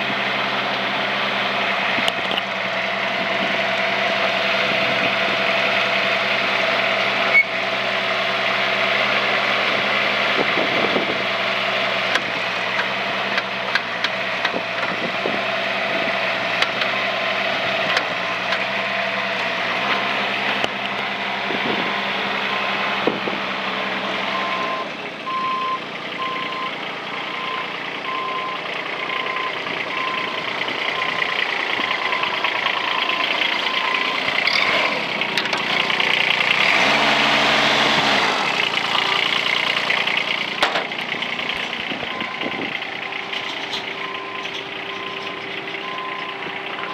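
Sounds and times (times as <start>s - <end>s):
mini excavator running: 0.0s - 46.9s
knocks and clanks: 40.5s - 42.6s.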